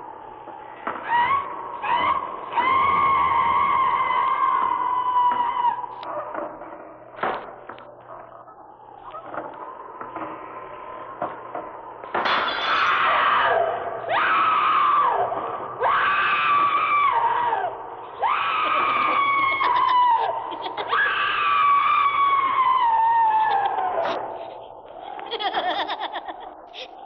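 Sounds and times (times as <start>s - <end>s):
drawn-out shrieking cries: 12.6s - 24.0s.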